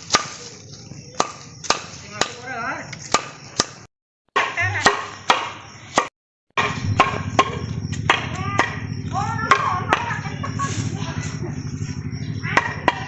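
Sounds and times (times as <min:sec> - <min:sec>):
axe chopping tree trunk: 0:00.0 - 0:00.6, 0:01.2 - 0:02.4, 0:03.0 - 0:08.8
background voices: 0:06.9 - 0:12.9.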